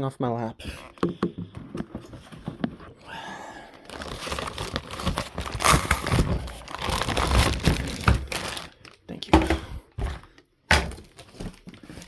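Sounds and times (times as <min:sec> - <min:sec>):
packaging crinkling and crackling: 0:03.7 - 0:09.3, 0:10.3 - 0:12.0
packaging rustling: 0:03.7 - 0:09.3, 0:10.0 - 0:12.0
packaging knocks: 0:03.9 - 0:10.1.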